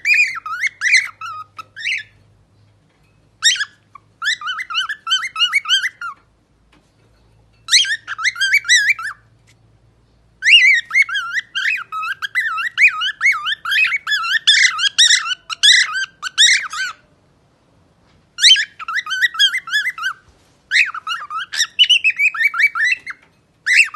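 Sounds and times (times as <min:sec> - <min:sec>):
parrot singing warbled phrases: 0:00.0 - 0:02.2, 0:03.4 - 0:06.2, 0:07.7 - 0:09.2, 0:10.4 - 0:17.1, 0:18.4 - 0:23.9.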